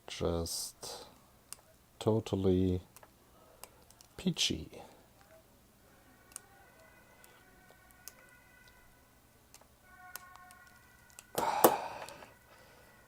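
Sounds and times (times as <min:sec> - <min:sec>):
faint high whine: 0:04.8 - 0:13.0.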